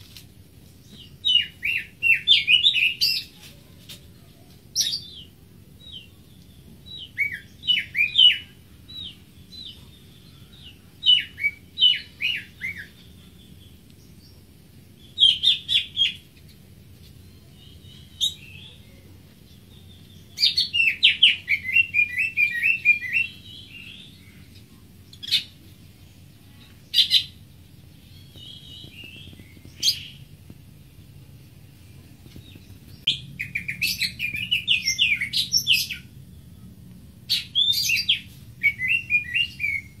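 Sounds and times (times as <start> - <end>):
bird singing high trills: 4.8 - 14.4, 17.2 - 25.6, 33.0 - 36.2, 37.3 - 40.0.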